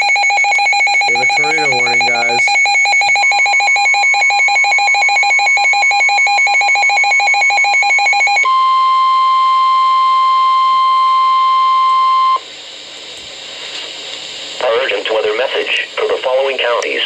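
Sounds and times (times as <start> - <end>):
steady alarm tone: 0.0 - 12.4
fast buzzy electronic beeping: 1.0 - 2.8.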